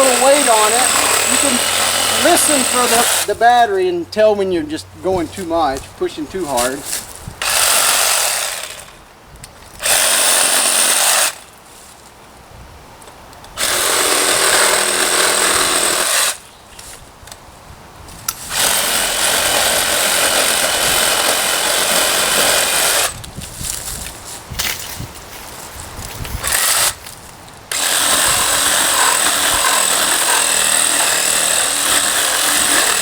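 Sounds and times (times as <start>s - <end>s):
reciprocating saw cutting limbs: 0.0s - 4.3s, 5.2s - 8.9s, 9.8s - 11.4s, 13.6s - 16.4s, 18.3s - 23.2s, 26.4s - 27.1s, 27.7s - 33.0s.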